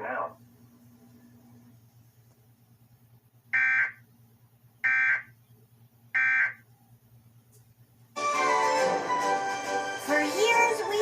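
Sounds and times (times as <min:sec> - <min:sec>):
buzzing digital data tone: 0:03.6 - 0:04.0.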